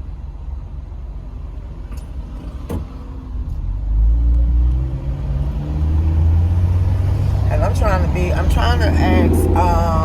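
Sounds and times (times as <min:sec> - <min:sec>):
car engine accelerating: 0:01.5 - 0:10.0.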